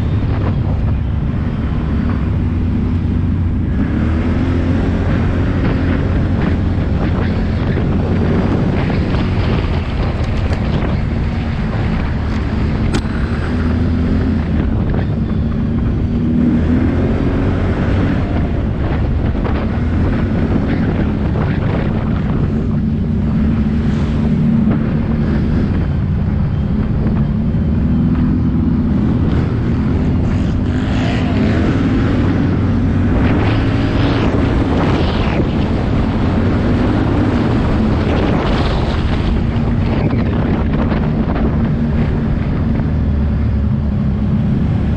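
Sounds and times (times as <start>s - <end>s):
wind buffeting microphone: 0.0s - 44.9s
atv engine revving: 26.8s - 42.8s.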